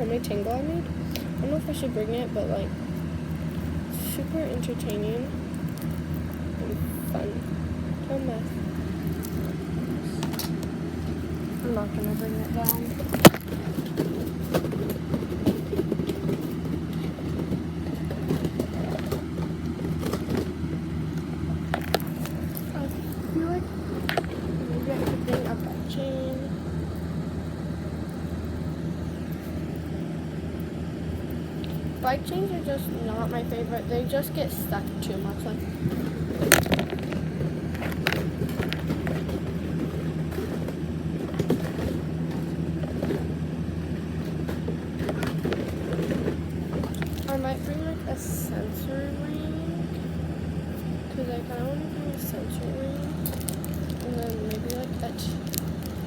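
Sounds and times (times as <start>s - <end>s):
continuous low hum: 0.0s - 56.0s
plastic toys clicking and rattling: 11.5s - 20.5s, 21.2s - 26.0s, 32.0s - 43.3s, 44.2s - 47.8s, 51.4s - 56.0s
plastic fidget toys clicking: 53.0s - 56.0s.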